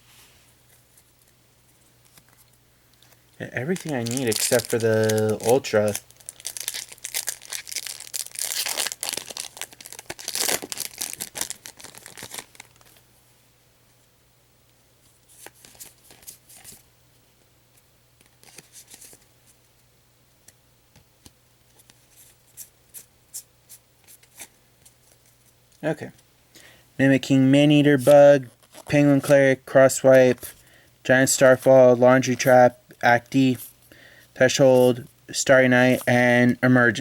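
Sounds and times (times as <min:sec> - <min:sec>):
foil wrapper tearing and crinkling: 0:03.6 - 0:13.0, 0:28.5 - 0:28.9.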